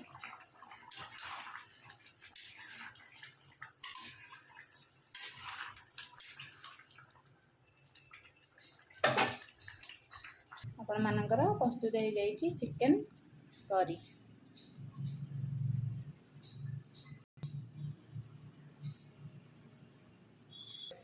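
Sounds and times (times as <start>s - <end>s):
curry plopping and sloshing in pan: 0.0s - 10.7s.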